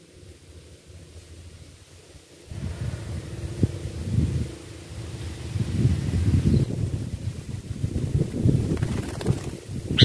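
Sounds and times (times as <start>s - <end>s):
wind buffeting microphone: 2.5s - 10.0s.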